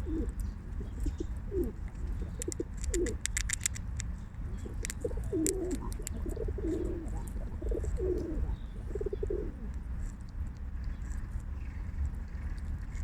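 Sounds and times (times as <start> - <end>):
pigeon cooing: 0.0 - 3.2, 4.5 - 9.8
steady low rumble: 0.0 - 13.0.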